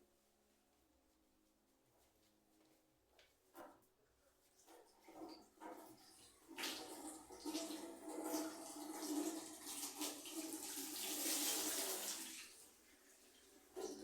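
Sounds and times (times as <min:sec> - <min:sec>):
tap water running and splashing: 0:04.9 - 0:14.0.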